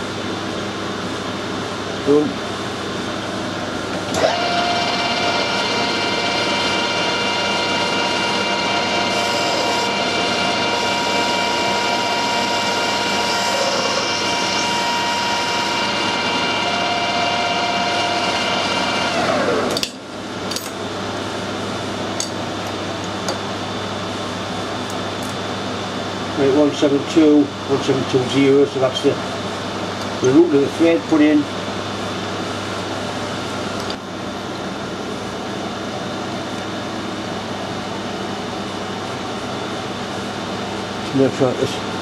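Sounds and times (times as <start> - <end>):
metal lathe whining: 3.9 - 19.9.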